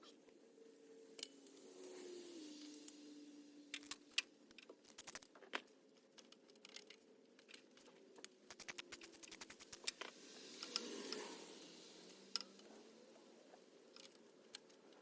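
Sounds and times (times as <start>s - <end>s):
faint steady hum: 0.0s - 15.0s
metallic clicks of hand tools: 3.7s - 5.3s, 6.2s - 12.7s
ratchet clicking: 8.5s - 12.6s.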